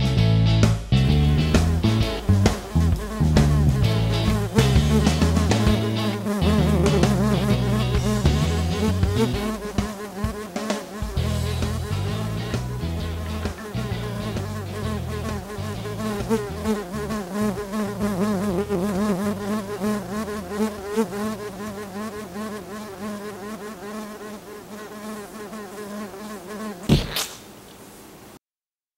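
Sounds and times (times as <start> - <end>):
low shifting notes: 0.1 - 9.7, 11.1 - 20.8
buzzing wavering drone: 1.8 - 9.9, 11.0 - 21.8
sharp click: 26.9 - 27.5.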